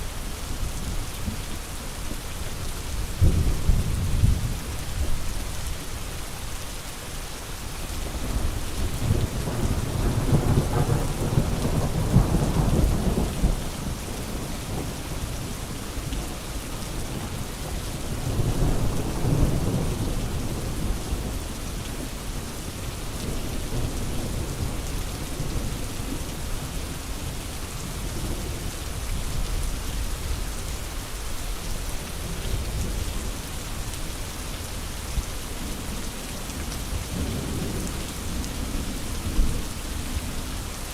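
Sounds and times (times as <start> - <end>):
steady rain falling: 0.0 - 40.9
low rolling thunder: 3.0 - 5.2, 8.0 - 15.5, 18.0 - 21.4.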